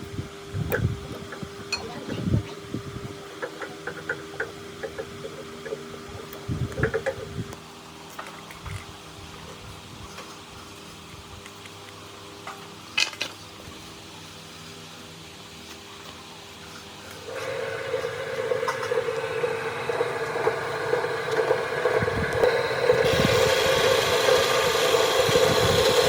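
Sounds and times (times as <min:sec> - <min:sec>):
electric motor hum: 0:17.1 - 0:26.0.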